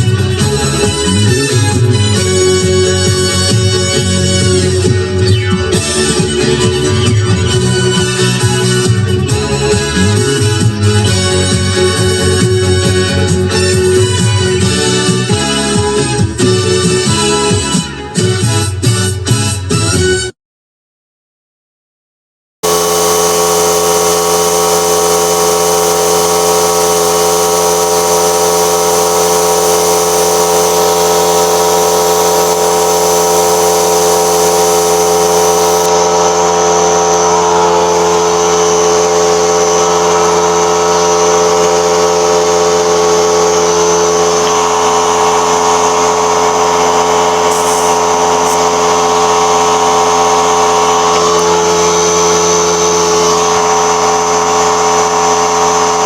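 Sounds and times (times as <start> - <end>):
power tool humming and whining: 22.6 - 56.0.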